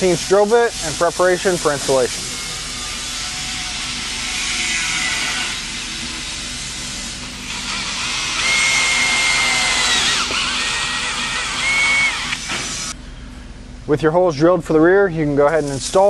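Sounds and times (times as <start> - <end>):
power drill boring into plastic: 7.5 - 12.9.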